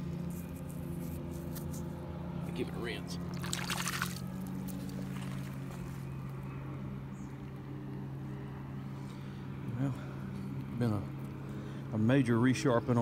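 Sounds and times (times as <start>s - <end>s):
boat engine droning: 0.0s - 13.0s
water splashing swish: 3.3s - 4.4s.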